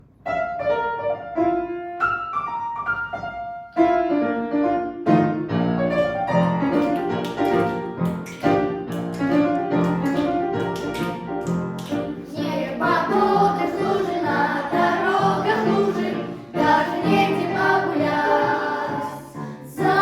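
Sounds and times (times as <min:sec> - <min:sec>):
boogie-woogie piano: 0:00.0 - 0:20.0
light percussion: 0:06.4 - 0:16.1.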